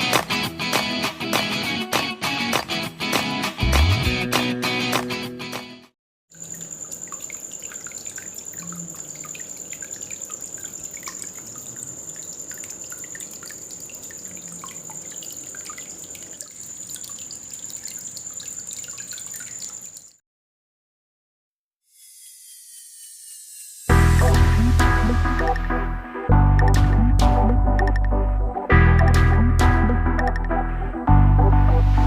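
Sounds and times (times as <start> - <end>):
water dripping into basin: 6.3 - 20.2, 25.2 - 25.7, 26.5 - 28.2, 30.2 - 30.6.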